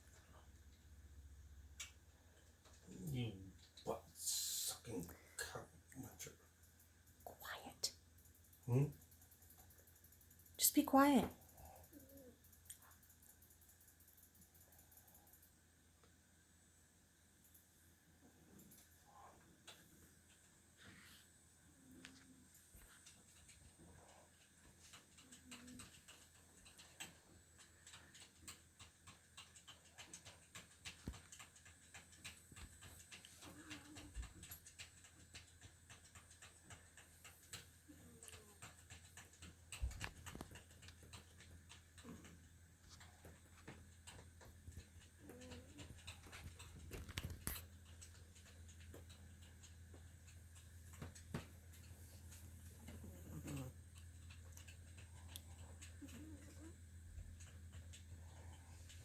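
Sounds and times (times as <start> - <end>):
faint irregular ticks and clicks: 0.0 - 59.0
steady low hum: 0.0 - 59.0.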